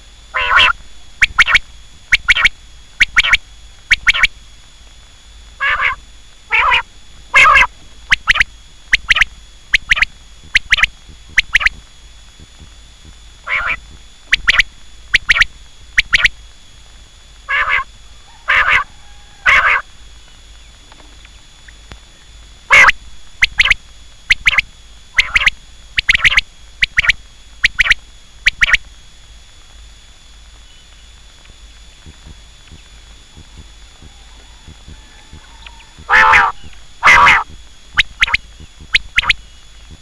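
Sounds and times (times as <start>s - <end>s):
quail calling: 0.3s - 4.3s, 5.6s - 11.7s, 13.4s - 13.8s, 17.5s - 19.9s, 22.7s - 24.6s, 25.2s - 28.8s, 33.4s - 40.0s.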